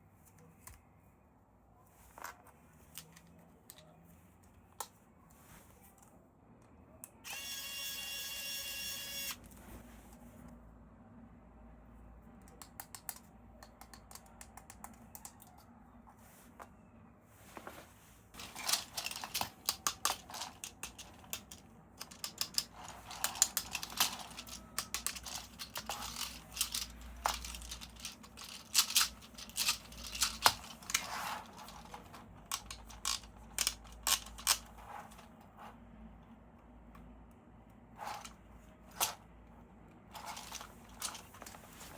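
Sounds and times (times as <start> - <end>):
plastic and cardboard crackling: 17.5 - 35.3, 40.1 - 41.9.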